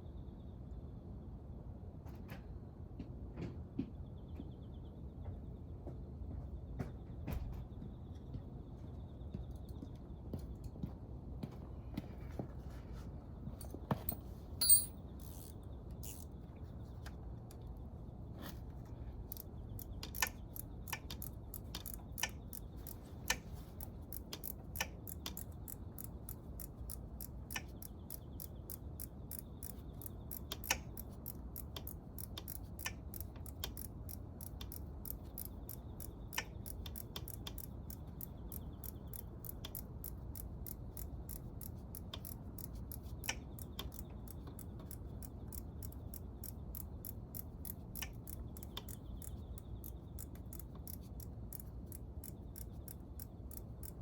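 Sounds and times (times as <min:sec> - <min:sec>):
low steady hum: 0:07.7 - 0:54.0
loud metal clink: 0:14.1 - 0:15.0
metallic clicks of hand tools: 0:14.1 - 0:16.3, 0:19.3 - 0:54.0.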